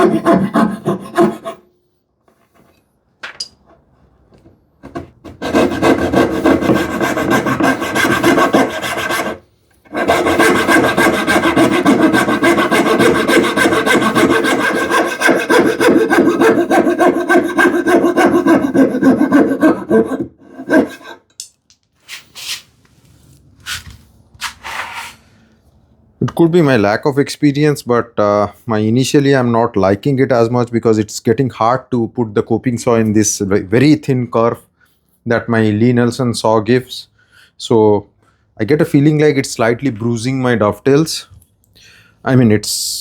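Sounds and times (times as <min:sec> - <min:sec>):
saw rasping through wood: 0:00.0 - 0:01.6, 0:05.3 - 0:21.2.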